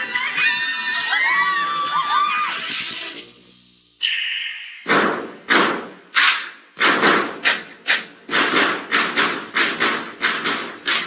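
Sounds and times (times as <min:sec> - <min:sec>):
booming drum beats: 0:04.8 - 0:06.1.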